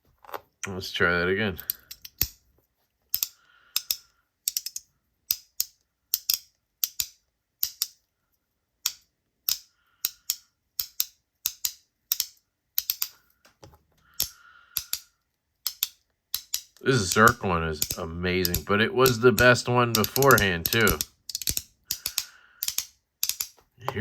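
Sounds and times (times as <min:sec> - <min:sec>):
magnets snapping together: 0:08.8 - 0:13.2, 0:14.1 - 0:23.6.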